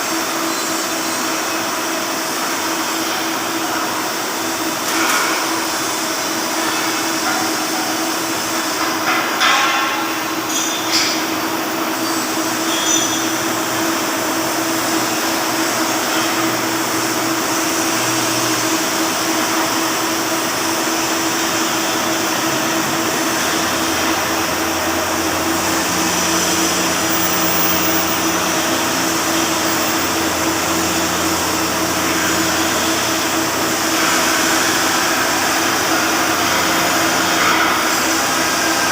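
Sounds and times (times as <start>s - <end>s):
welding arc crackling and hissing: 0.0s - 38.9s
welding machine hum: 0.0s - 38.9s.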